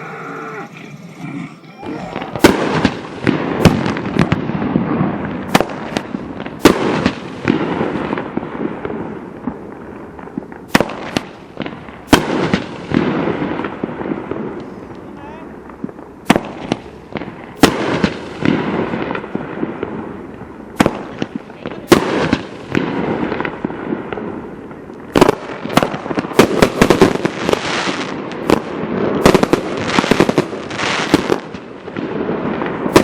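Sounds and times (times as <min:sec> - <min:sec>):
firework crackling: 0:00.0 - 0:33.0
firework shot reports: 0:01.7 - 0:04.4.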